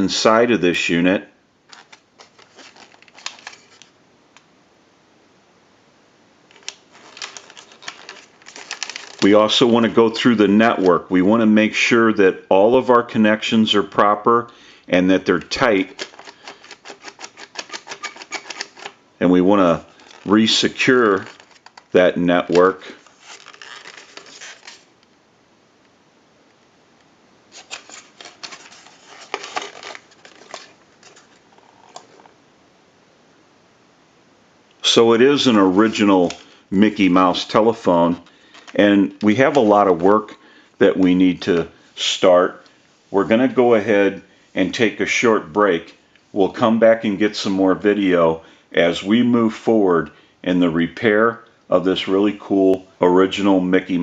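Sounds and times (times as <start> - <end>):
screwdriver clicking and scraping metal: 15.9 - 19.0.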